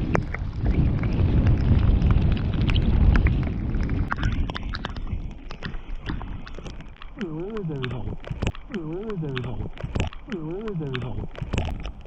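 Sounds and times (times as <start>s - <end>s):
wind buffeting microphone: 0.0s - 6.5s
bike ticks and rattles: 0.0s - 7.2s.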